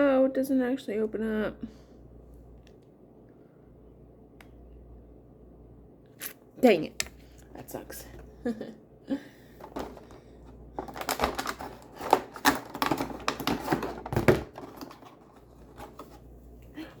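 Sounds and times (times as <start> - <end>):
packaging being handled: 10.7 - 16.1.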